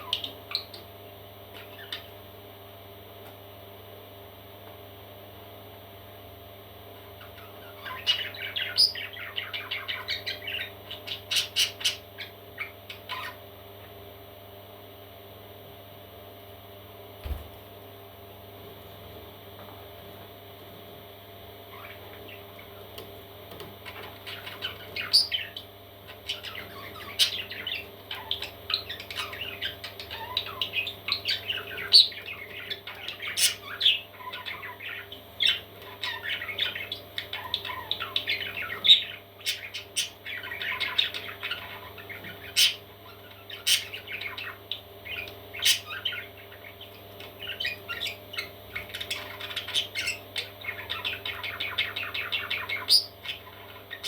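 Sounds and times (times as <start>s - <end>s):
parrot chicks chirping and squawking: 0.0s - 0.9s, 1.5s - 2.3s, 7.0s - 14.1s, 21.6s - 54.0s
steady low hum: 0.0s - 54.0s.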